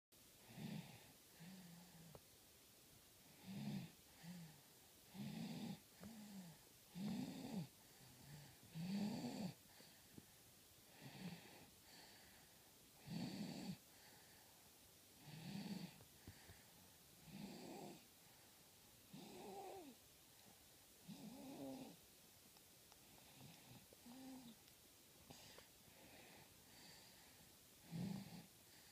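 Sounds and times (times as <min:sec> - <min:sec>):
baby snoring softly: 0:03.3 - 0:10.0, 0:10.9 - 0:12.4, 0:13.0 - 0:14.2, 0:15.2 - 0:16.6, 0:17.2 - 0:18.1, 0:19.1 - 0:20.0, 0:21.0 - 0:22.0, 0:23.2 - 0:24.6, 0:25.3 - 0:28.9.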